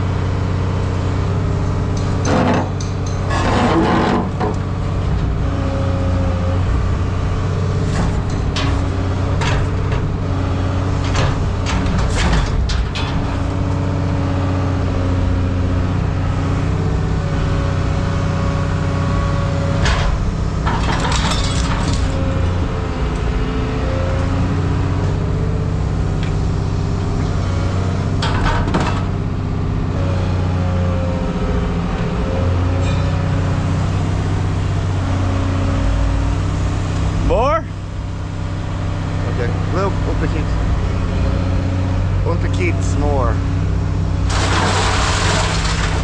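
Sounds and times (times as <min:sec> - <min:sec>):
engine running: 0:00.0 - 0:46.0
rattling clatter: 0:19.8 - 0:22.6, 0:44.3 - 0:46.0.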